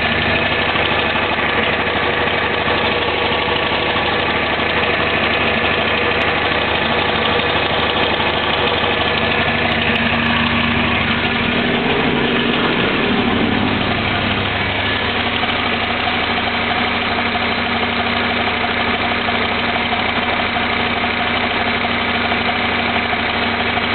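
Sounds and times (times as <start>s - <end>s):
car engine running: 0.0s - 23.9s.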